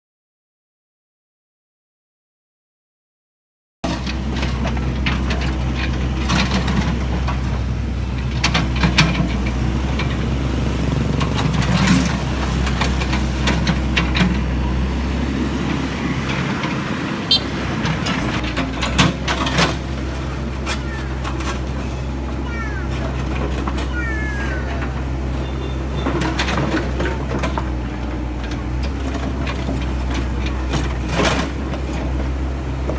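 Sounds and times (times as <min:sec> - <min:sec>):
diesel engine running: 0:03.8 - 0:32.9
knocks and clanks: 0:17.8 - 0:25.2, 0:25.9 - 0:27.8.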